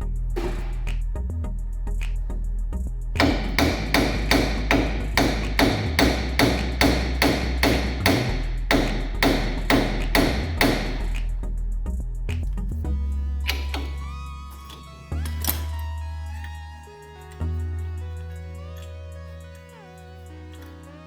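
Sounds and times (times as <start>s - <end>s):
hammer striking metal: 0.4s - 1.0s, 3.2s - 11.3s.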